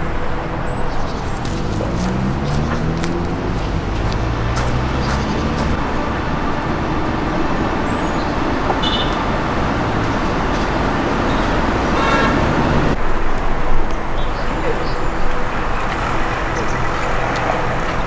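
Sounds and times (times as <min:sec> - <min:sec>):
road traffic passing: 0:00.0 - 0:18.0
car horn: 0:00.1 - 0:13.0.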